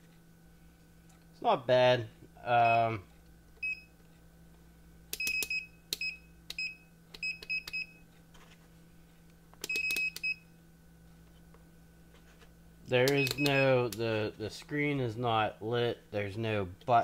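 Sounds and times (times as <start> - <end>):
control buttons clicking: 5.1 - 7.9, 9.6 - 10.4, 13.0 - 14.0
multimeter short high beeps: 5.2 - 8.0, 9.6 - 10.6, 13.1 - 13.8.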